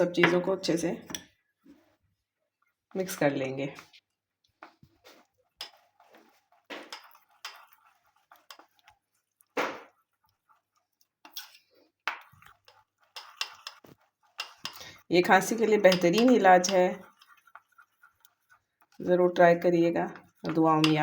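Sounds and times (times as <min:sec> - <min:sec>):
spoon scraping and tapping bowl: 0:00.1 - 0:01.9, 0:04.6 - 0:21.0
spoon knocking bowl: 0:15.8 - 0:16.9, 0:20.2 - 0:21.0.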